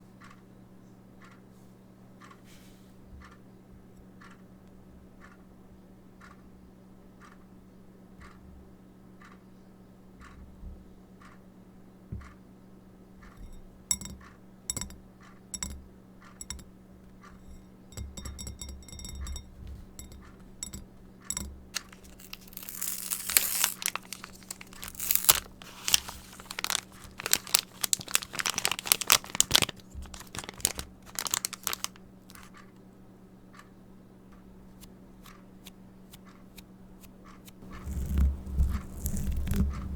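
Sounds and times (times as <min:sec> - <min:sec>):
faint steady tick: 0:00.2 - 0:00.4, 0:01.2 - 0:01.4, 0:02.2 - 0:02.4, 0:03.2 - 0:05.4, 0:06.2 - 0:06.5, 0:07.2 - 0:07.5, 0:08.2 - 0:08.6, 0:09.2 - 0:09.5, 0:10.2 - 0:11.4
plastic packaging crinkling: 0:21.8 - 0:32.5, 0:37.6 - 0:39.9.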